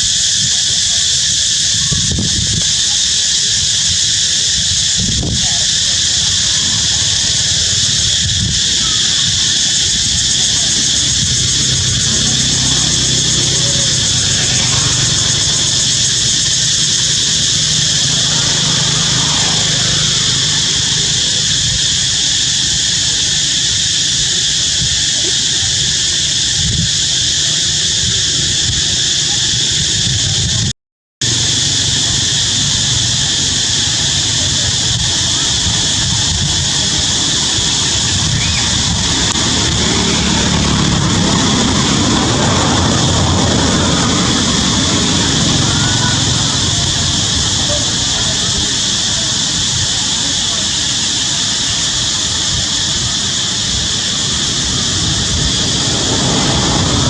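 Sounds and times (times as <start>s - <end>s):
high-pitched insect chorus: 0.0s - 57.0s
low rumble: 5.1s - 22.1s, 31.2s - 50.0s, 52.7s - 57.0s
low engine hum: 6.0s - 22.1s, 31.2s - 50.3s, 52.5s - 57.0s.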